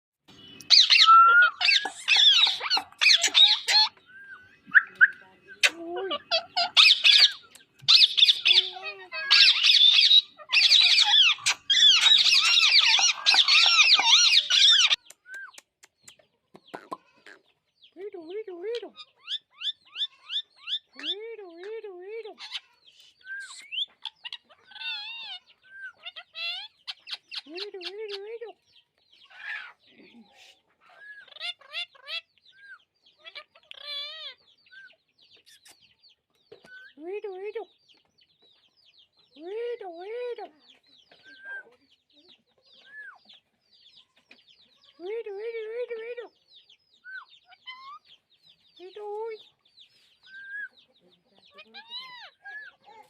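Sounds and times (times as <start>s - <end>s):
parakeet chirping and squawking: 0.6s - 15.1s, 18.8s - 21.0s, 22.4s - 28.4s, 30.8s - 35.9s, 47.0s - 49.0s, 49.9s - 53.0s.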